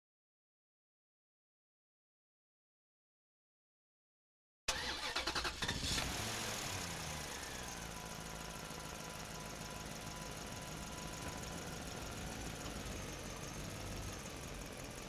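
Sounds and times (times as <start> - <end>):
engine starting and idling: 4.7 - 15.0.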